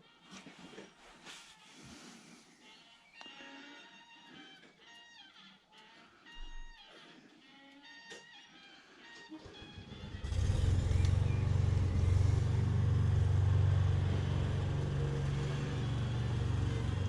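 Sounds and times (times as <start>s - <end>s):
engine humming steadily: 9.8s - 17.0s.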